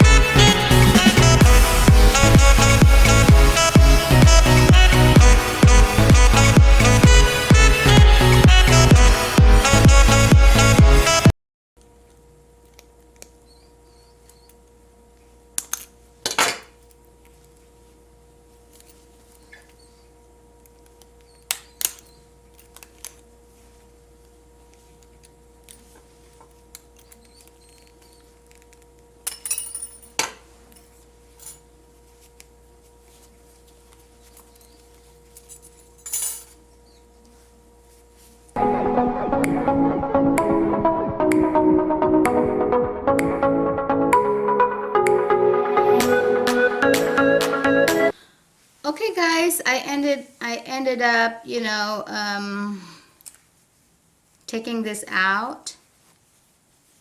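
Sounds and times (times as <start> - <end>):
faint steady hum: 48.1 - 57.0.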